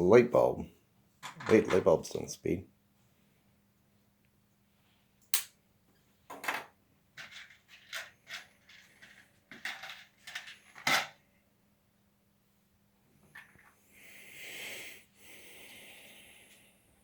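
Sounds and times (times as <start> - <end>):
plastic pieces clicking and rattling: 6.3 - 11.2.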